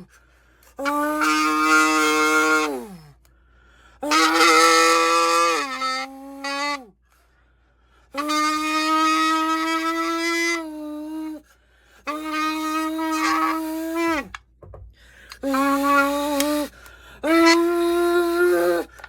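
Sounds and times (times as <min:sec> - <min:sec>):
horn-like notes blown into can: 0:00.8 - 0:03.1, 0:04.0 - 0:06.9, 0:08.1 - 0:11.4, 0:12.0 - 0:14.4, 0:15.3 - 0:19.0.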